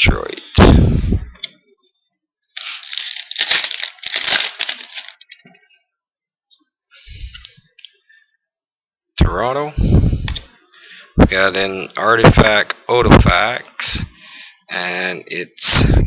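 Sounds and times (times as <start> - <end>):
foil wrapper crinkling: 2.6 - 5.4.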